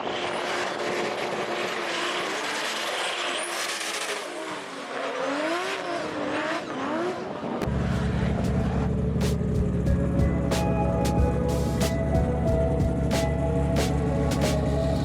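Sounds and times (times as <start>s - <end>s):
car engine revving: 0.0s - 15.0s
music with heavy bass: 7.7s - 15.0s.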